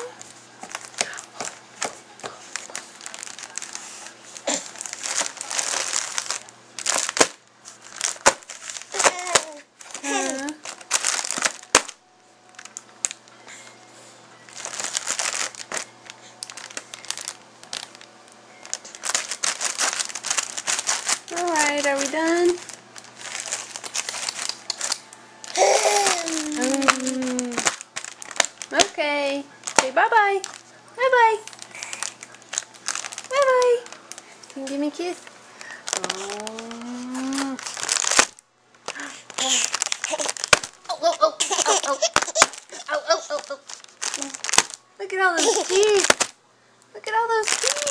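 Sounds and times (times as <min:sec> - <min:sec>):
crinkly wrapping being crumpled: 0:00.0 - 0:13.7, 0:14.4 - 0:46.4, 0:47.1 - 0:47.9
held rising vocal sound: 0:36.0 - 0:37.6.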